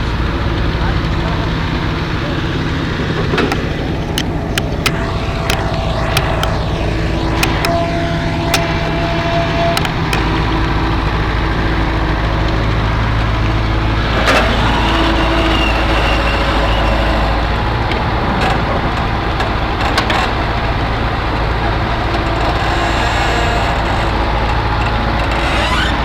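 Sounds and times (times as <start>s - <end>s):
short knocks: 3.5s - 6.7s, 7.4s - 7.8s.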